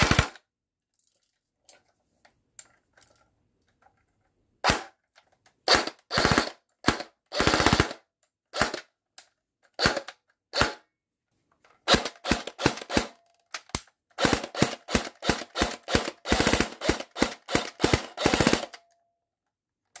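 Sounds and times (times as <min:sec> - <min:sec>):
airsoft gun motor and gearbox cycling: 0:11.9 - 0:18.9.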